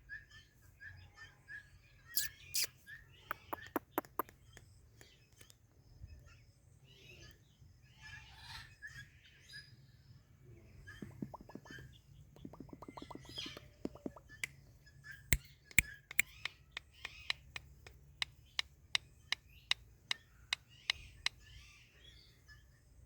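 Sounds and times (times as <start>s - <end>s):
parrot chirping chatter: 2.2s - 4.3s, 10.9s - 14.6s
parrot sharp clicks: 3.3s - 4.4s.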